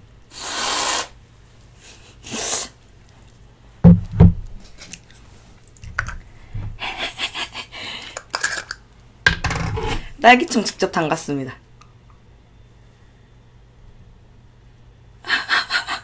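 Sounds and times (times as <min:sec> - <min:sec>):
dull thumps: 0:03.8 - 0:04.6.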